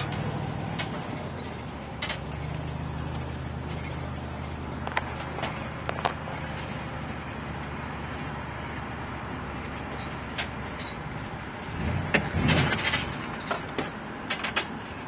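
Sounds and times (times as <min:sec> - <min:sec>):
rough rumble with knocks: 0:00.0 - 0:08.4, 0:09.6 - 0:15.0
van engine idling: 0:00.0 - 0:15.0.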